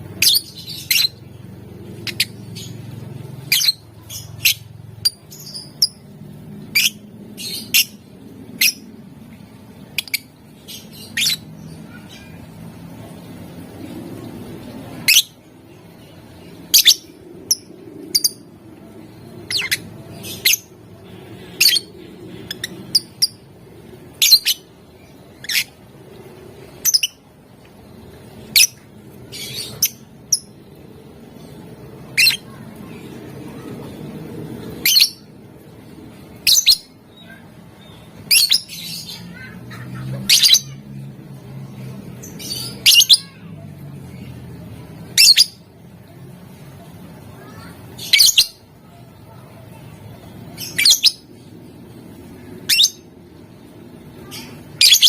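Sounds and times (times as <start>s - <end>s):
lovebird squawking chirps: 19.5s - 20.7s, 38.3s - 40.8s.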